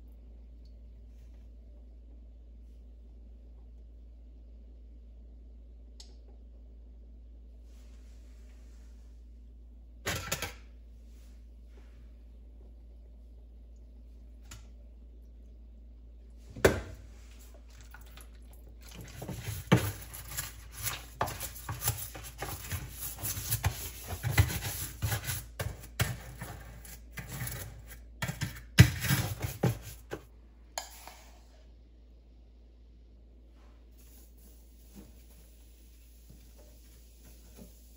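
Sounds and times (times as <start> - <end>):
rubbing and scraping: 18.9 - 30.2.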